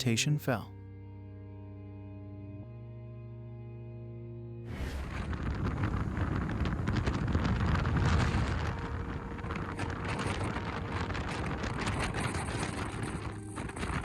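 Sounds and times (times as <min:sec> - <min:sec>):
wind buffeting microphone: 0:04.7 - 0:14.0.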